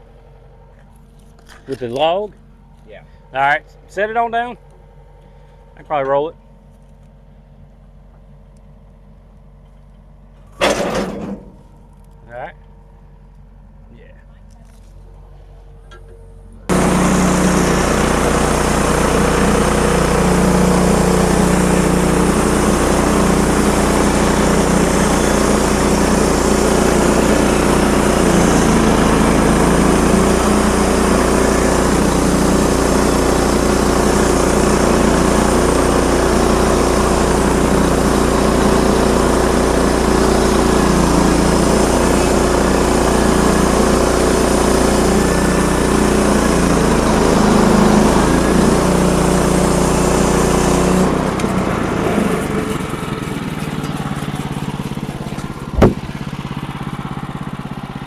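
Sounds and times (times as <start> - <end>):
engine running loudly: 16.6 - 58.0.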